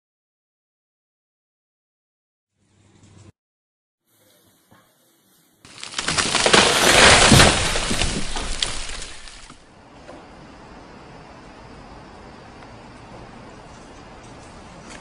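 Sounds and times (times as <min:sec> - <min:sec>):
loud crash clatter: 0:05.9 - 0:09.6.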